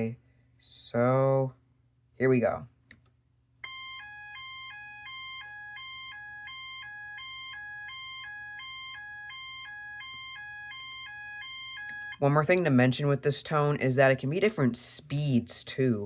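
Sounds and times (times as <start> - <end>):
fire alarm horn high-low tone: 3.7 - 12.4.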